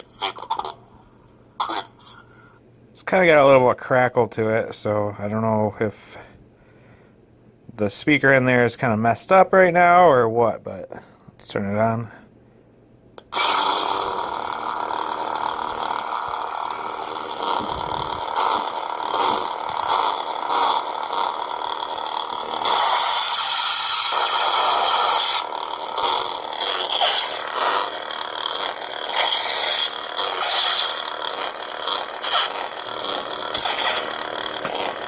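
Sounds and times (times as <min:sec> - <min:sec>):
lightsaber buzzing hum: 0:13.2 - 0:35.0
speaker crackle: 0:13.2 - 0:35.0.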